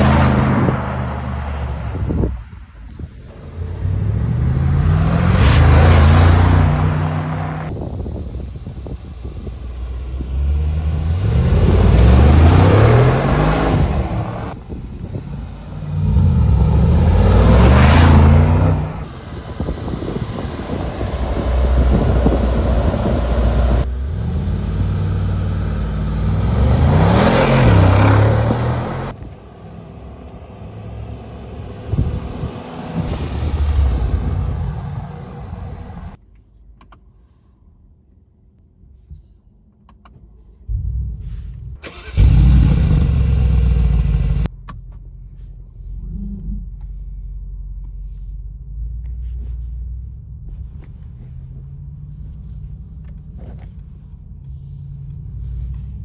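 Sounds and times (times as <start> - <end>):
car engine revving: 3.4 - 29.2, 29.8 - 36.2, 40.7 - 44.5
car engine idling: 40.7 - 56.0.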